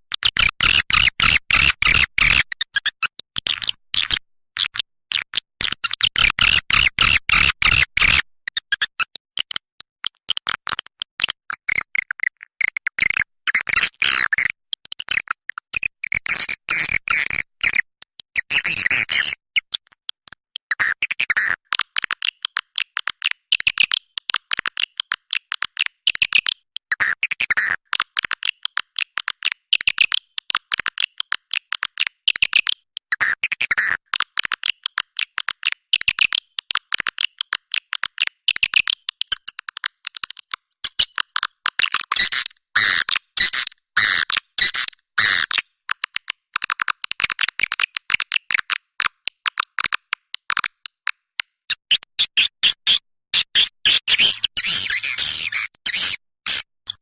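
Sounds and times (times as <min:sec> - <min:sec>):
rapid high bird chirps: 0:51.9 - 0:56.7.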